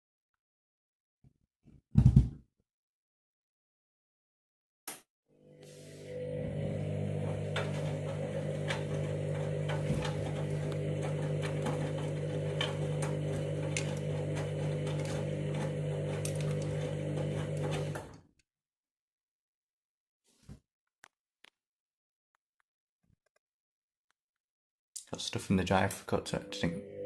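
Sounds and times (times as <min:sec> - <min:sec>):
washing machine humming: 0:05.4 - 0:18.2.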